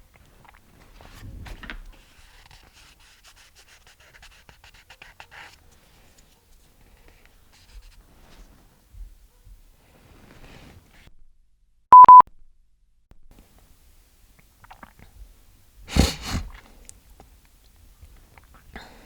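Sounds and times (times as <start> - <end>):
dog panting: 15.9 - 16.8.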